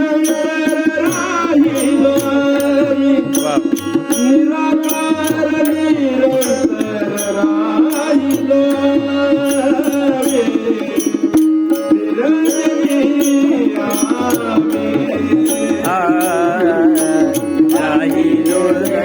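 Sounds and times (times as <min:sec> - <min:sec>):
high percussive strokes: 0:00.0 - 0:19.0
drum rhythm: 0:00.2 - 0:19.0.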